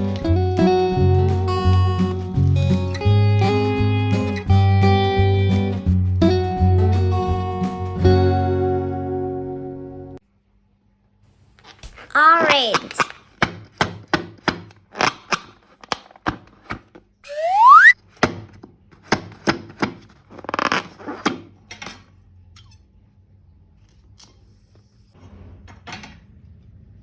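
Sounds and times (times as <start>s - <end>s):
rising whistle-like squeal: 17.3s - 18.0s.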